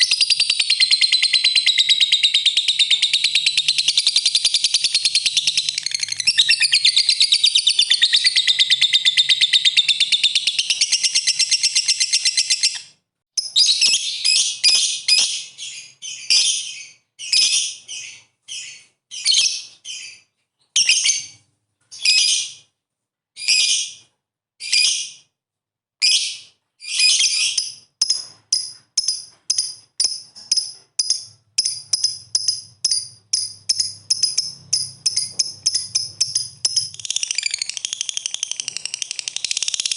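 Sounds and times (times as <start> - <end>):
lovebird chattering trill: 0.0 - 12.8, 27.2 - 39.9.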